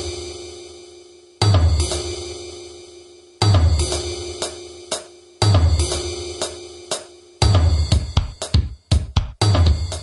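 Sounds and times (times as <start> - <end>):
kick drum and bass hit: 7.4 - 10.0.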